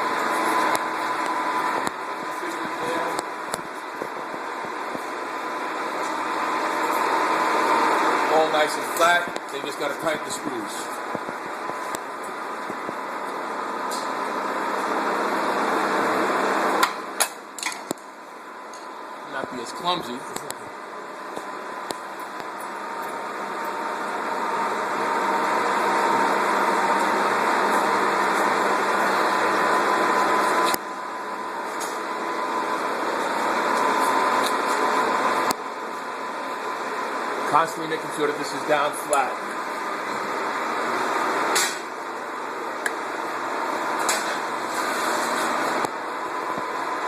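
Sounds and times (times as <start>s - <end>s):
mechanical hum with high tone: 0.0s - 47.0s.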